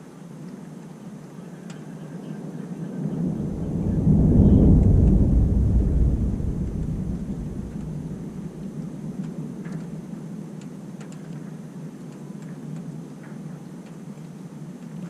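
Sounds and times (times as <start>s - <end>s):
thunder rumbling: 2.8s - 9.8s
steady low hiss: 2.9s - 10.0s.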